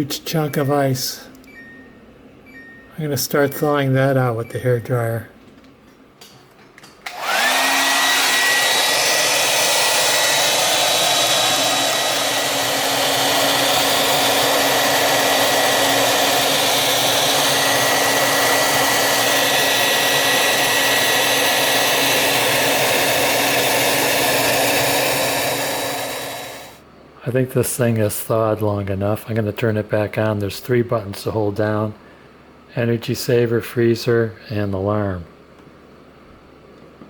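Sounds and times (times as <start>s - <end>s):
hair dryer running: 7.0s - 26.8s.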